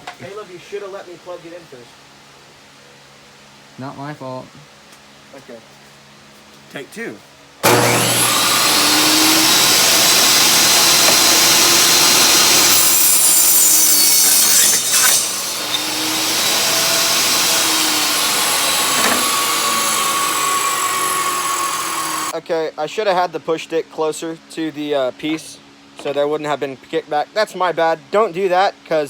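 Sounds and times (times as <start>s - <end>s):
table saw cutting wood: 7.6s - 22.4s
workpiece knocking against saw: 18.8s - 19.5s.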